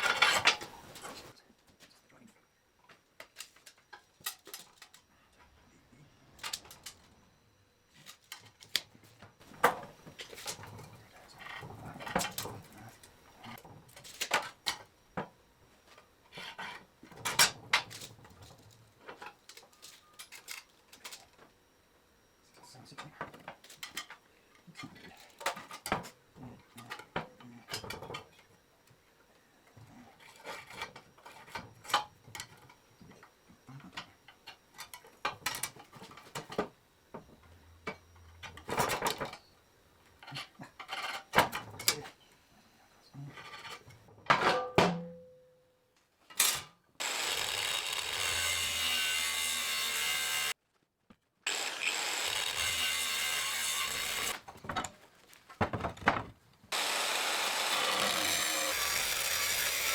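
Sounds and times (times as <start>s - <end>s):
harsh metalworking tool noise: 0.0s - 1.3s, 46.3s - 50.6s, 51.5s - 54.8s, 56.7s - 59.9s.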